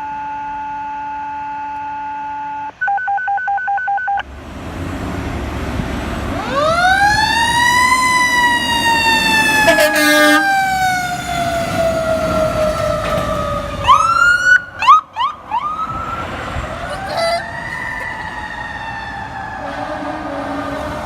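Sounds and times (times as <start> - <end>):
fire truck siren wailing and yelping: 5.7 - 21.0.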